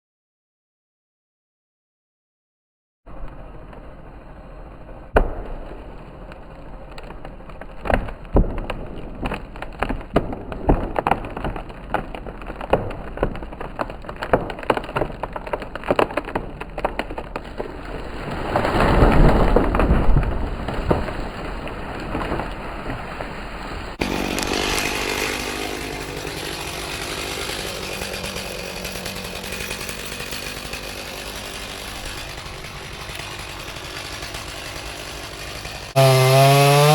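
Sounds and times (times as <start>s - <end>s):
tree crashing down: 5.2s - 36.9s
wood cracking and snapping: 6.8s - 36.9s
small engine running: 24.0s - 36.9s.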